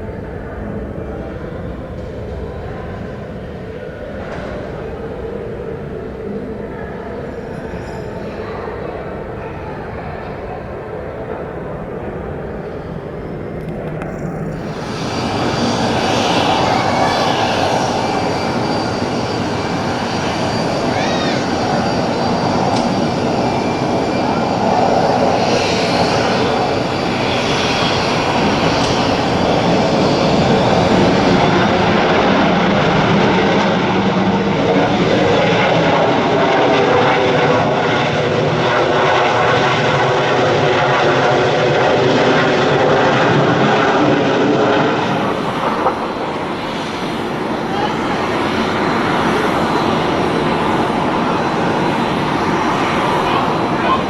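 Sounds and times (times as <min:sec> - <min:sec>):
jet engines running: 0:00.0 - 0:54.0.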